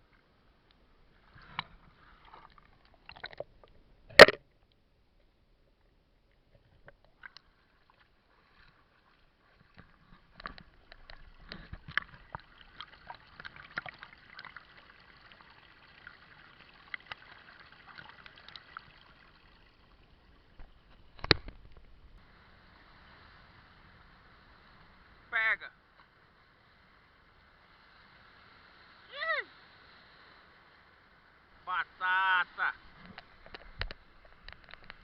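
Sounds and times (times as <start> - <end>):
sea water trickling among rocks: 0.0 - 35.0
small clicks and taps: 20.6 - 21.9, 33.1 - 35.0.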